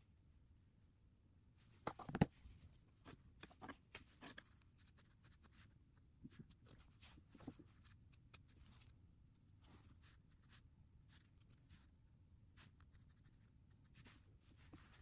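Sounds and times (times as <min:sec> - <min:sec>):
brush strokes on paper: 0:12.6 - 0:15.0.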